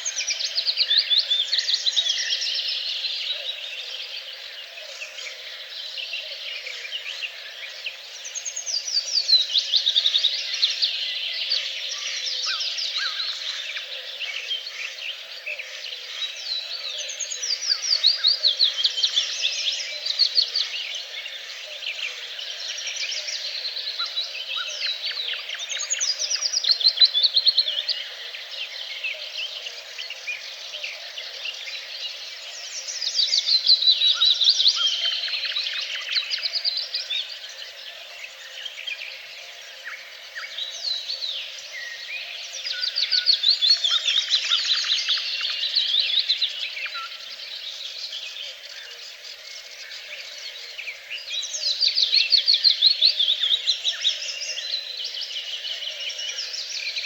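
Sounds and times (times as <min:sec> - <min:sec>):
songbirds singing in chorus: 0:00.0 - 0:57.0.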